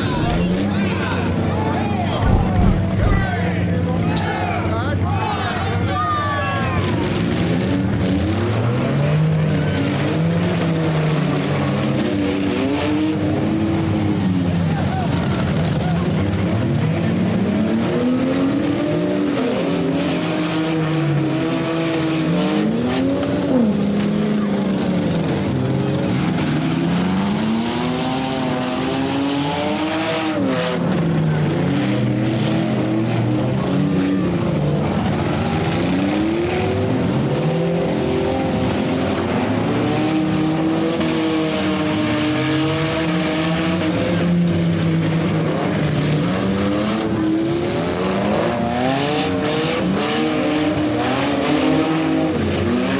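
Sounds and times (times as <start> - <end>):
car engines revving: 0.0 - 52.9
sharp bang: 2.2 - 3.5.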